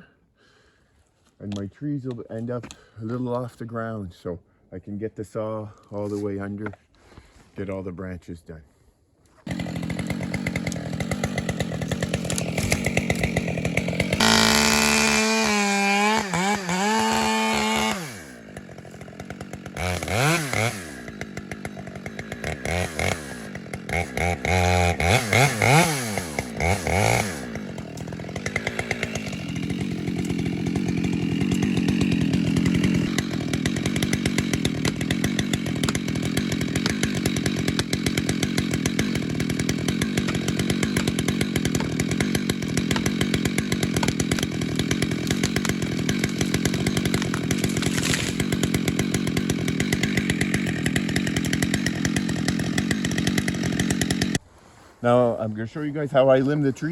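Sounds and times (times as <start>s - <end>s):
chainsaw revving: 9.4s - 54.4s.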